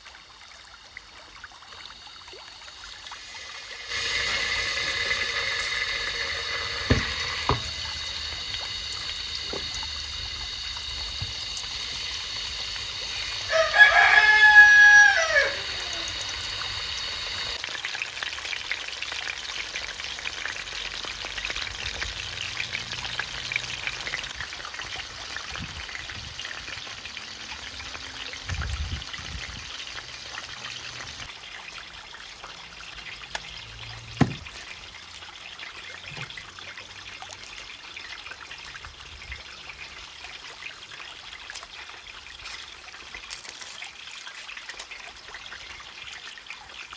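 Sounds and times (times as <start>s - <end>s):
rooster crowing: 13.2s - 16.5s.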